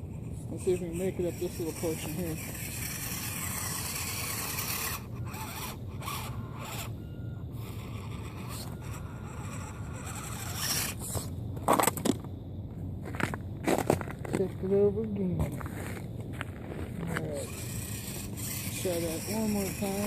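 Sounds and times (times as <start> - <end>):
toy car electric motor whirring: 0.0 - 11.3, 17.0 - 20.0
tires scrabbling on rock: 0.0 - 20.0
loud crunches: 7.7 - 14.5.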